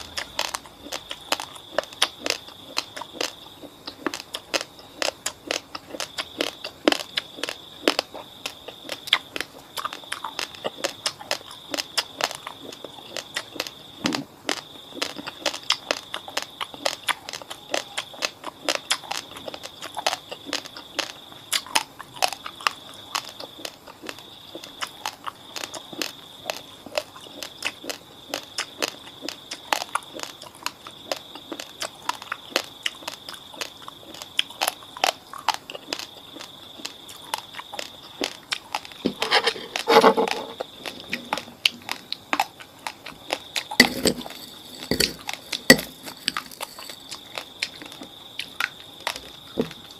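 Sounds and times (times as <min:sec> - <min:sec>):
rice grains crunching: 0:39.2 - 0:47.5.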